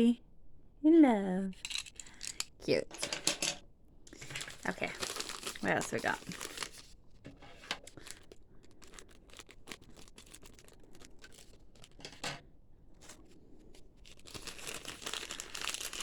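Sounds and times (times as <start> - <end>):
packaging crinkling and tearing: 4.1 - 12.4, 13.0 - 16.0.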